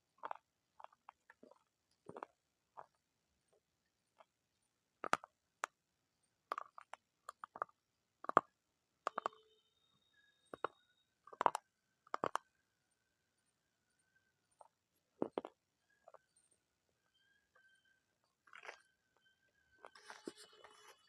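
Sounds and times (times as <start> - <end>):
crunchy chewing: 0.2 - 3.0, 18.5 - 18.8.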